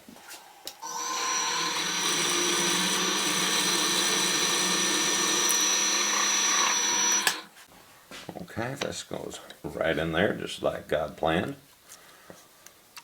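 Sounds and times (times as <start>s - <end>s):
power tool motor whining: 0.8s - 7.5s.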